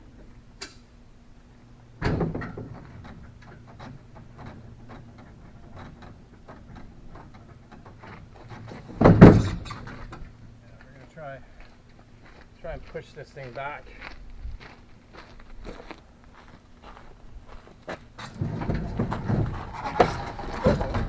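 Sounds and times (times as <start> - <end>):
heavy thuds with scraping rattle: 1.9 - 11.2, 17.8 - 21.0
light knocks and clatter: 2.0 - 10.5, 17.8 - 21.0.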